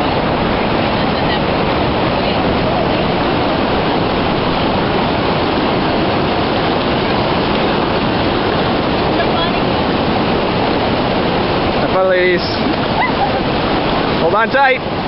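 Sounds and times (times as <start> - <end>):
river rapids rushing: 0.0 - 15.0.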